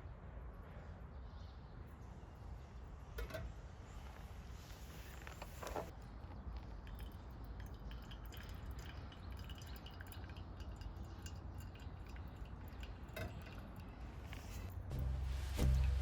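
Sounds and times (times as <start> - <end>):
water dripping: 6.6 - 16.0
low steady rumble: 13.9 - 16.0.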